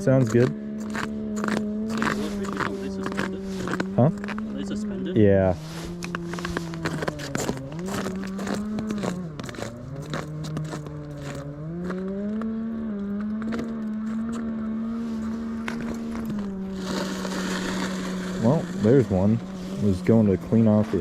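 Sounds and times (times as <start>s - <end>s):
power ice auger drilling: 0.0s - 21.0s
ice chips scraping and crackling: 0.2s - 4.5s, 5.6s - 12.3s, 15.2s - 21.0s.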